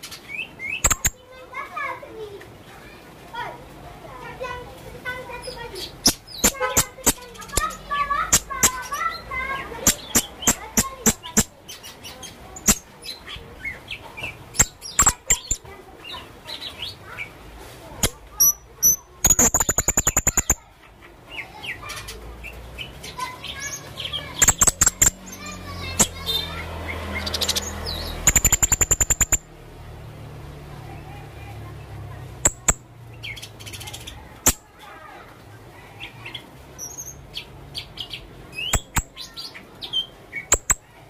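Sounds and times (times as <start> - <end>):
birds chirping and whistling: 0.0 - 1.2, 5.4 - 17.0, 18.1 - 20.7, 21.3 - 29.5, 36.1 - 40.9
fast bird trill: 0.6 - 1.2, 5.9 - 11.6, 12.6 - 13.3, 14.5 - 15.6, 18.1 - 20.7, 23.1 - 29.4, 38.6 - 40.9.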